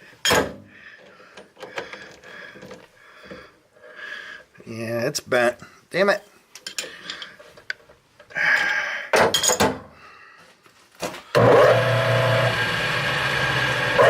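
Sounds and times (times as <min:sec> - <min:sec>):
power tool motor humming: 0:11.4 - 0:14.0.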